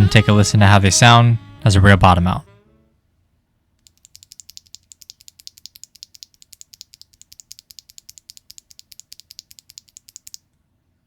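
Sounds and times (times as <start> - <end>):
keyboard switch clicks: 3.9 - 10.4.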